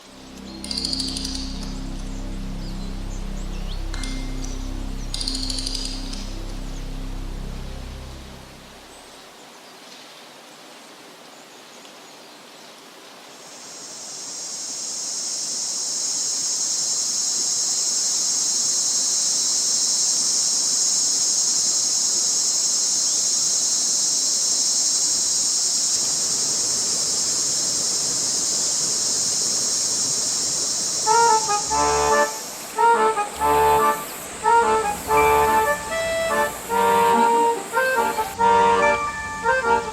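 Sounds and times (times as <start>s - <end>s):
high-pitched insect chorus: 0.0s - 9.0s, 13.2s - 38.4s
music: 0.0s - 9.1s, 31.0s - 39.9s.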